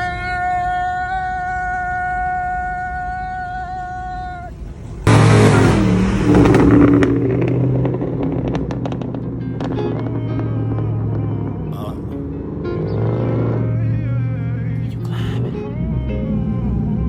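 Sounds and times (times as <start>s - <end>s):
steady high whine: 0.3s - 12.8s
car engine accelerating: 4.5s - 17.0s
exhaust crackling pops: 5.0s - 13.6s.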